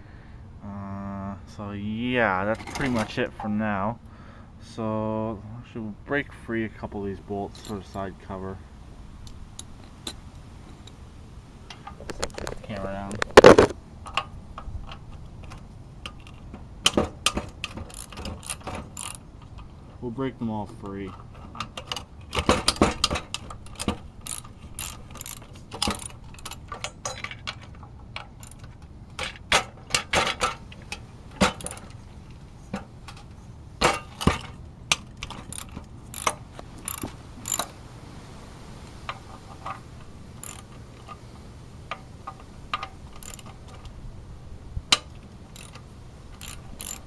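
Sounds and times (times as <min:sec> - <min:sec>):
socket ratchet clicking: 0:14.9 - 0:19.7, 0:21.6 - 0:32.0, 0:34.1 - 0:37.7, 0:40.4 - 0:41.2, 0:42.4 - 0:43.9, 0:44.9 - 0:47.0.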